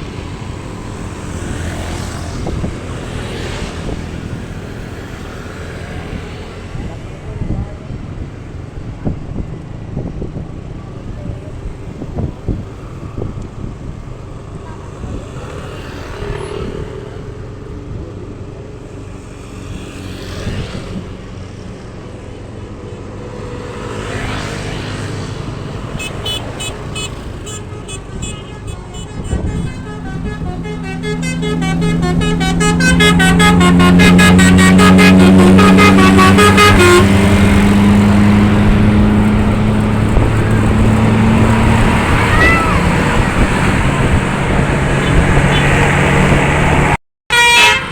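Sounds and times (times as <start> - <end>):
road traffic passing: 0.0 - 47.9
bus multi-tone air horn: 25.9 - 38.2, 47.3 - 47.9.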